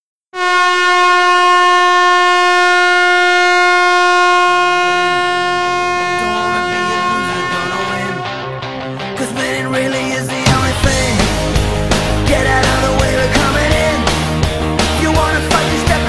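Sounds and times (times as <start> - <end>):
goal horn blowing: 0.4 - 8.6
rock music: 5.7 - 16.0.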